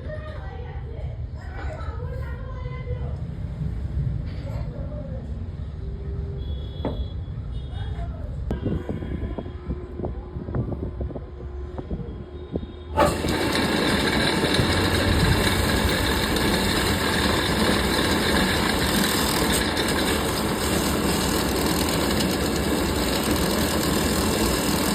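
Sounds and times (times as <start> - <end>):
vehicle engine running: 13.0 - 24.9.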